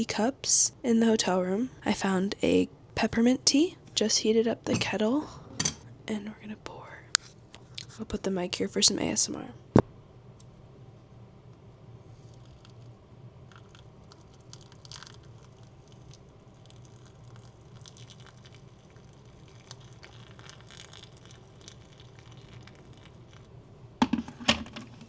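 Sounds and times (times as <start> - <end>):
china clinking: 5.4 - 5.8
water pouring into a teacup: 13.5 - 23.5.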